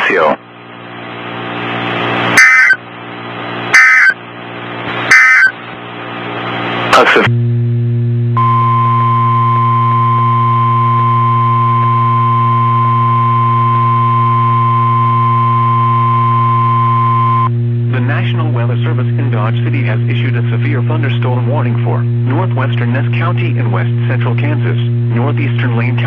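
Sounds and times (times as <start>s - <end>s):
steady hum: 0.0s - 26.0s
radio static: 2.3s - 2.8s, 3.8s - 4.2s, 4.9s - 5.6s, 6.9s - 7.3s
digital data bursts: 2.4s - 2.8s, 3.8s - 4.2s, 5.1s - 5.5s
steady warning alarm tone: 2.4s - 2.8s, 3.7s - 4.2s, 5.1s - 5.6s, 8.4s - 17.5s.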